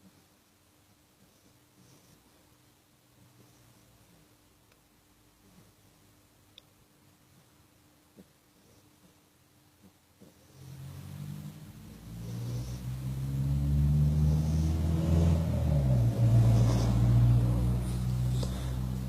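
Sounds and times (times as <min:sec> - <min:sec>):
vehicle engine humming: 0:10.7 - 0:19.0.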